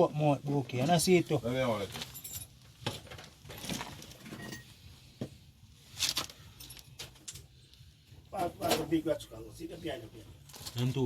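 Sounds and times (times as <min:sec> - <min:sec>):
metal tools clinking: 0:01.8 - 0:04.8.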